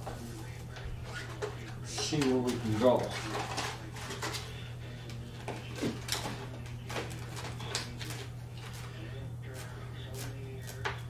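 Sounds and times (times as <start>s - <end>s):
low electrical hum: 0.0s - 11.0s
vinyl film handling clicks and crinkles: 0.7s - 4.5s, 5.1s - 8.9s.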